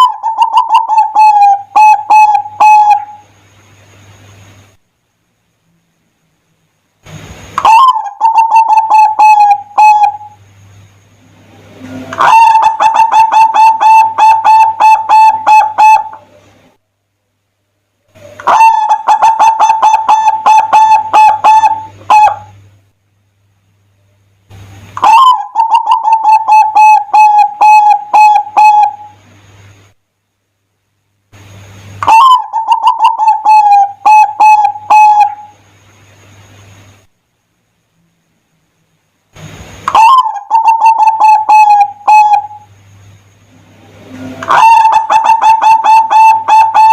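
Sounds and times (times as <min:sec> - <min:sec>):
dove cooing: 0:00.0 - 0:03.3, 0:07.6 - 0:10.4, 0:11.7 - 0:16.6, 0:18.1 - 0:22.6, 0:25.0 - 0:29.2, 0:32.0 - 0:35.5, 0:39.9 - 0:42.8, 0:43.7 - 0:46.9.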